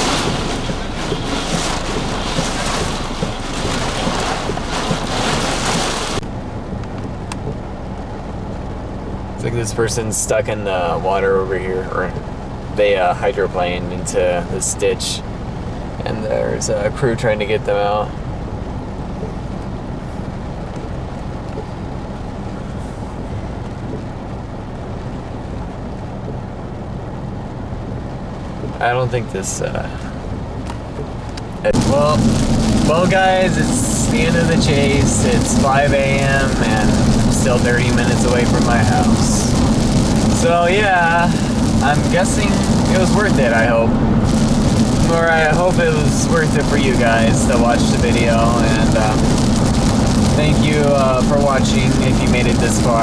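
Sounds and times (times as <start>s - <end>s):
steady hum: 0.0s - 6.2s, 31.6s - 53.0s
heavy rain lashing vehicle: 0.0s - 53.0s.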